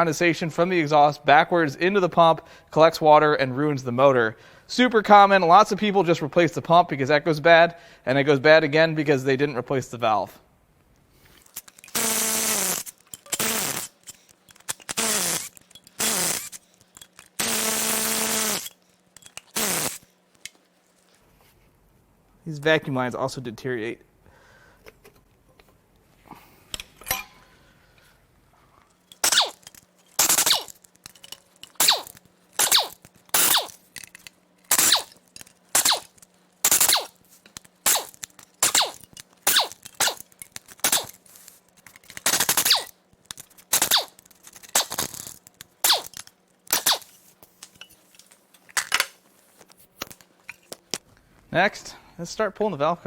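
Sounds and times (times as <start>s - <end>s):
impact wrench bursts: 11.4s - 20.1s, 29.0s - 47.8s.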